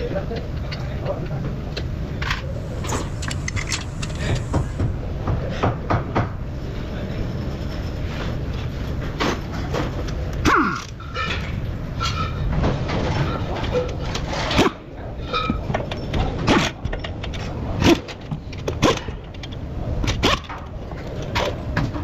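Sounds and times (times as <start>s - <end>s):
steady low hum: 0.0s - 12.6s.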